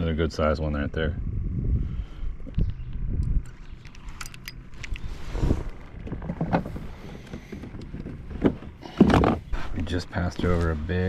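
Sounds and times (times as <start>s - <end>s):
low steady rumble: 0.0s - 11.0s
light clicks and knocks: 6.0s - 9.4s.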